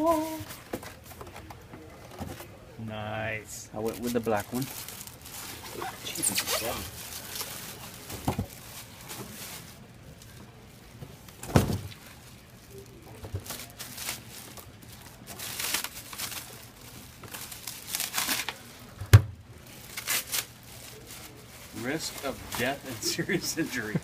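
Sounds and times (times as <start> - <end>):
plastic and paper crinkling: 3.8 - 19.0, 19.6 - 24.0.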